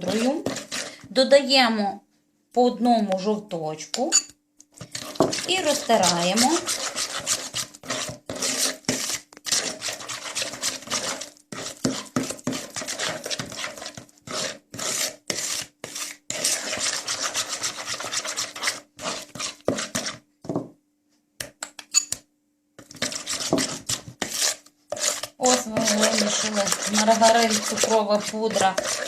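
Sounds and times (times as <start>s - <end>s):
utensil scraping a bowl: 0.0s - 1.1s, 4.8s - 20.2s, 22.8s - 29.0s.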